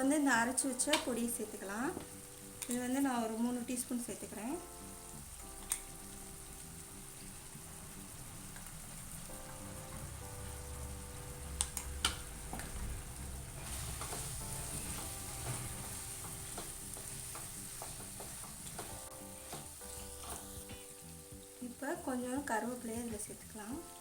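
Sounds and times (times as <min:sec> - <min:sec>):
chicken sizzling in a pan: 0:00.0 - 0:24.0
soft background music: 0:00.0 - 0:24.0
spatula scraping a pan: 0:13.6 - 0:21.1.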